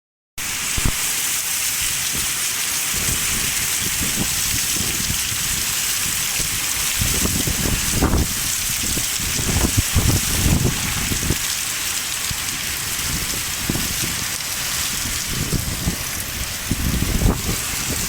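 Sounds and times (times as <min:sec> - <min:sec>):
heavy rain hissing: 0:00.4 - 0:18.0
wind buffeting microphone: 0:02.9 - 0:11.6, 0:12.2 - 0:18.0.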